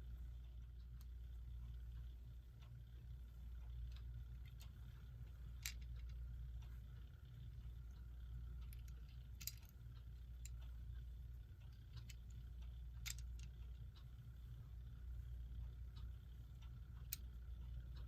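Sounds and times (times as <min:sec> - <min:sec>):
steady low hum: 0:00.0 - 0:18.0
plastic parts clicking: 0:05.5 - 0:06.2, 0:08.7 - 0:09.7, 0:13.0 - 0:13.5.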